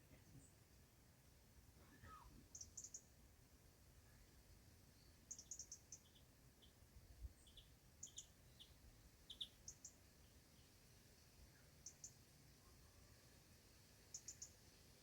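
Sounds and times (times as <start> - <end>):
small birds chirping: 1.9 - 3.1, 4.9 - 12.3, 14.0 - 15.0.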